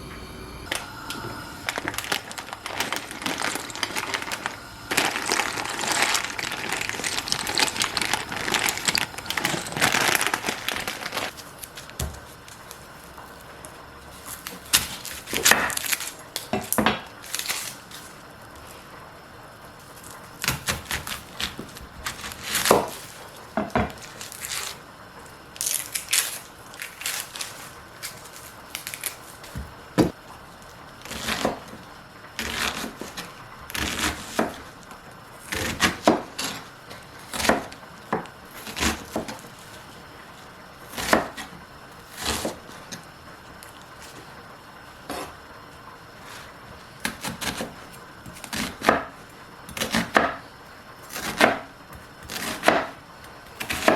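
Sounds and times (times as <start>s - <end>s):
utensils and dishes clattering: 1.6s - 11.4s.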